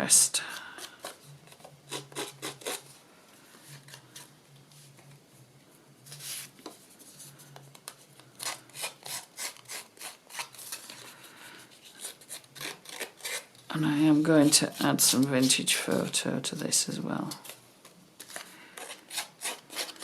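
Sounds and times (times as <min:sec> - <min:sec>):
blade scraping paper card edge: 0:00.8 - 0:02.8, 0:08.4 - 0:11.1, 0:11.8 - 0:15.5, 0:18.2 - 0:20.0.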